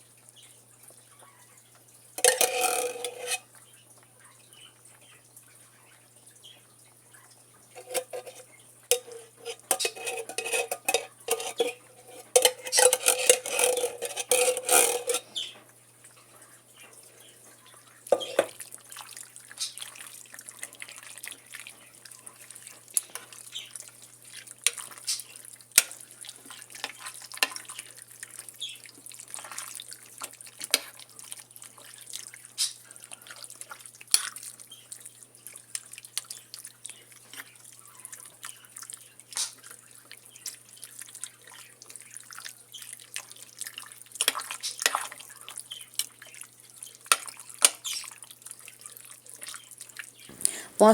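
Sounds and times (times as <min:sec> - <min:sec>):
spoon stirring thick food: 0:02.2 - 0:03.5, 0:07.8 - 0:15.5, 0:18.0 - 0:50.9
spoon clicking against pot: 0:07.8 - 0:15.2, 0:18.1 - 0:18.5.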